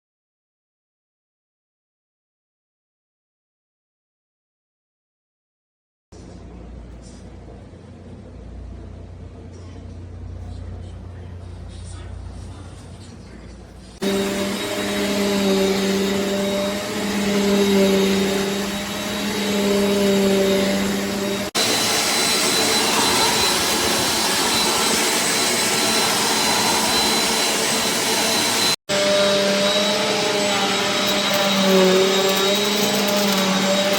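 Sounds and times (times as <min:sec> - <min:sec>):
upright vacuum cleaner running: 0:14.0 - 0:33.9.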